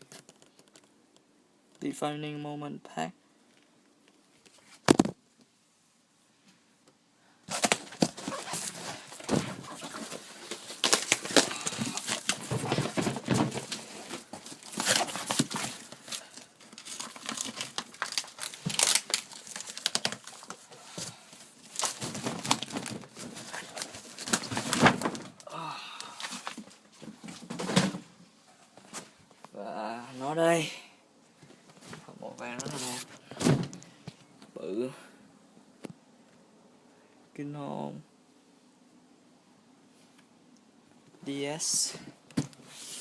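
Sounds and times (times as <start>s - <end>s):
packaging crinkling and tearing: 7.5s - 25.4s.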